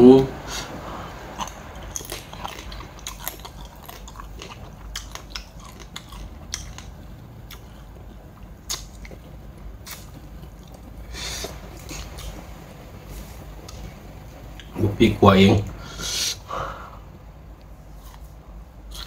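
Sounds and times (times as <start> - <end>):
person chewing crunchy food: 1.3 - 12.4.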